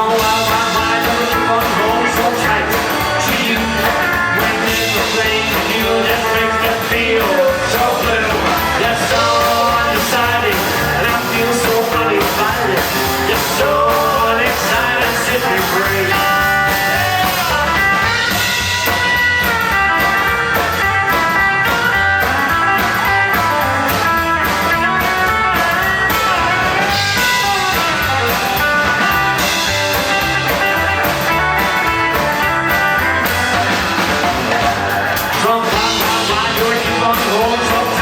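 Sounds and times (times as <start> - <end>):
rock band playing: 0.0 - 38.0
electric guitar solo: 16.7 - 35.4.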